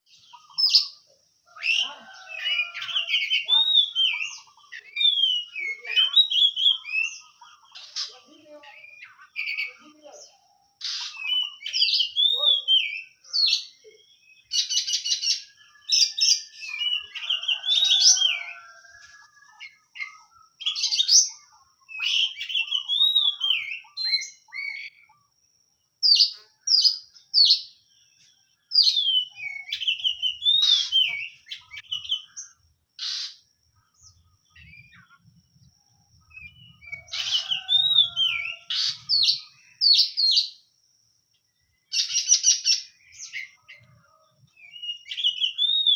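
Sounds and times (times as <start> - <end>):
bird singing whistled phrases: 1.6 - 7.3, 10.8 - 18.8, 20.0 - 25.0, 28.7 - 32.4, 36.3 - 40.6, 44.6 - 45.9.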